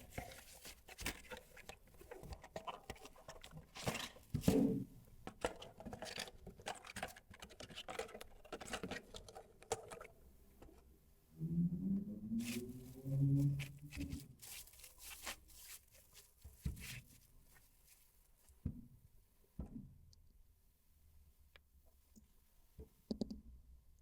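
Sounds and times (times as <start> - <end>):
hands handling packaging: 0.0 - 4.6, 5.3 - 10.1, 13.6 - 18.6.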